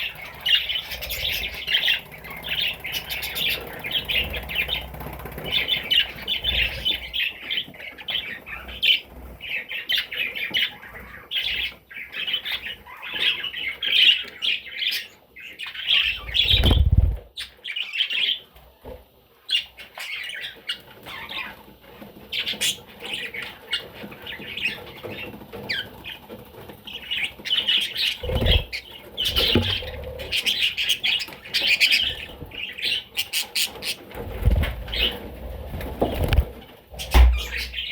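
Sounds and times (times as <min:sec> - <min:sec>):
low thumps: 0:16.3 - 0:17.3.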